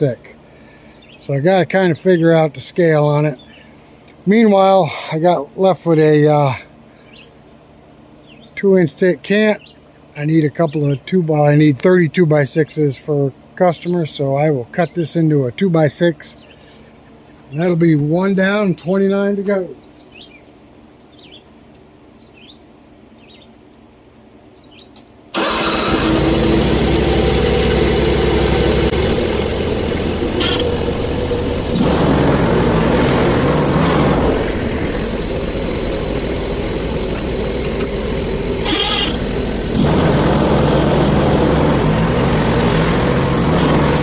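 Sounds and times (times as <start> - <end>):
gas engine running fast: 25.4 - 44.0.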